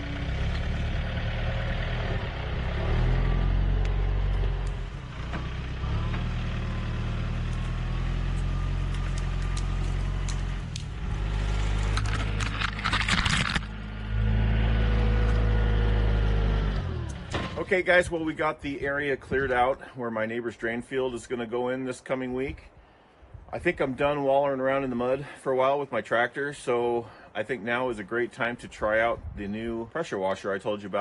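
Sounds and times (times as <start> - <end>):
tractor engine working: 0.0 - 18.1
loud crackling rasping burst: 7.4 - 16.0.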